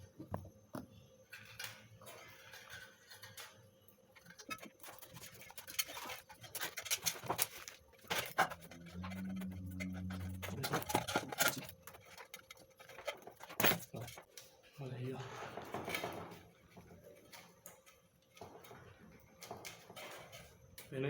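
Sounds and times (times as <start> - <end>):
low hum: 8.2 - 11.7.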